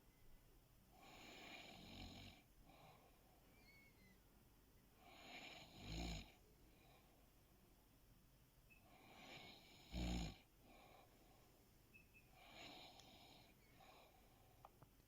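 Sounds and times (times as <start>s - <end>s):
soft breath: 2.6s - 4.2s, 6.5s - 7.5s, 8.7s - 9.8s, 10.6s - 14.8s.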